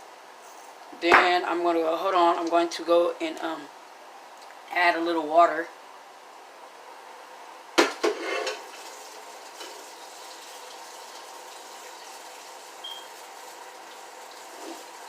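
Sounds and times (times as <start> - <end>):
tap water running: 8.4 - 15.0.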